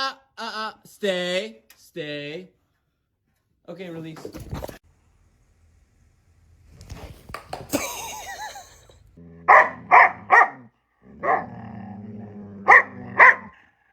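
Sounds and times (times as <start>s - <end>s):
dog growling: 9.2s - 13.9s
dog barking: 9.4s - 11.5s, 12.6s - 13.6s.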